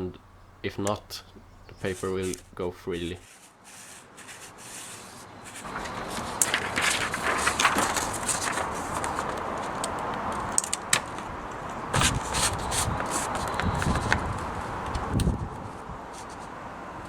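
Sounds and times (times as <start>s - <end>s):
mechanism scraping and rubbing: 1.4s - 5.7s.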